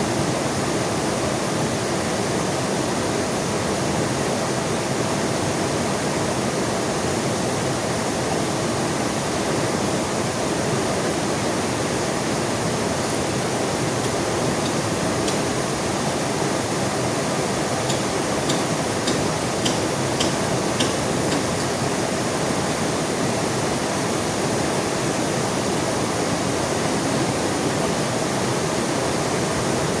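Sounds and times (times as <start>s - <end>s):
river rushing: 0.0s - 30.0s
heavy rain pouring: 8.8s - 29.9s
sharp ticks: 14.0s - 15.5s, 17.9s - 21.7s.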